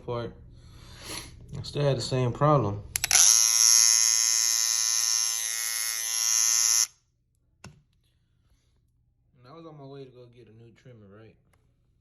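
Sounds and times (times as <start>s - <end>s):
hair trimmer buzzing: 3.0s - 6.9s.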